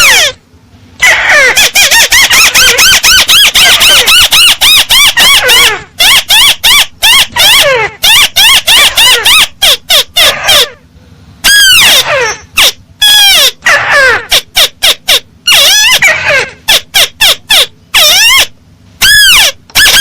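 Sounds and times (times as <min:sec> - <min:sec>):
crake calling harshly: 0:01.0 - 0:10.8, 0:11.4 - 0:20.0.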